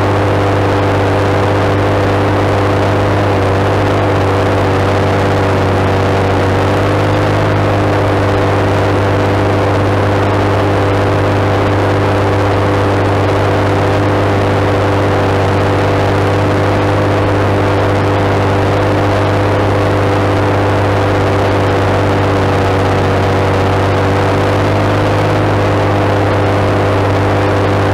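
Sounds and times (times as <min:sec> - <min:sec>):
tractor diesel engine growling: 0:00.0 - 0:27.9.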